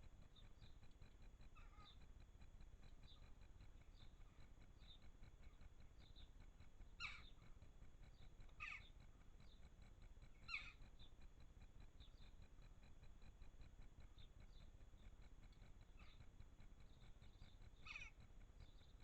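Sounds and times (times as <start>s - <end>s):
harsh bird calls: 7.0s - 7.3s, 8.6s - 8.9s, 10.4s - 10.8s, 17.8s - 18.2s.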